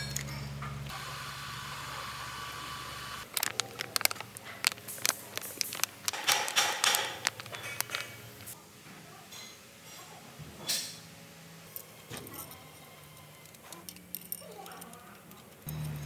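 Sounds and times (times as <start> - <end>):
metal tools clicking and clinking: 0.0 - 0.8, 3.2 - 8.6, 11.7 - 16.0.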